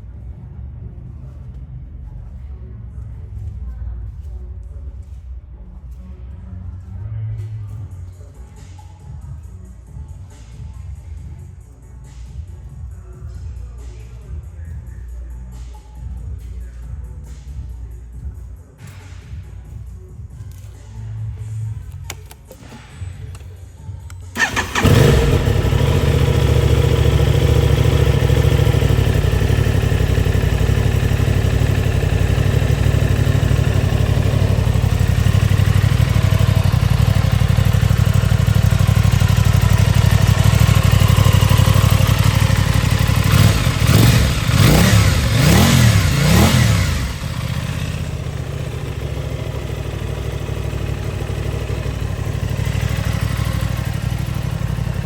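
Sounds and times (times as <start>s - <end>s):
motorcycle engine idling: 21.4s - 55.0s.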